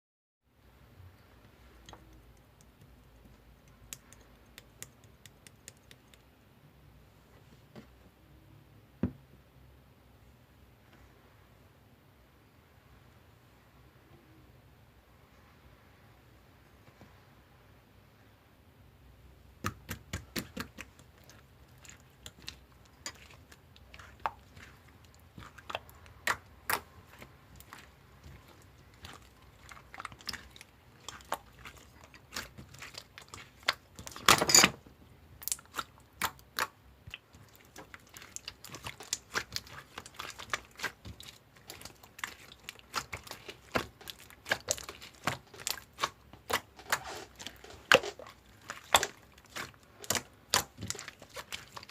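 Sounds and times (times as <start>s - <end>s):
slime squelching crackle: 19.9s - 34.6s, 35.4s - 51.9s.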